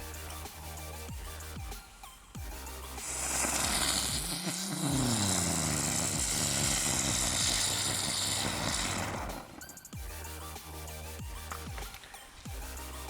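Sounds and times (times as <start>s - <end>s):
firework hissing sparks: 3.0s - 9.9s.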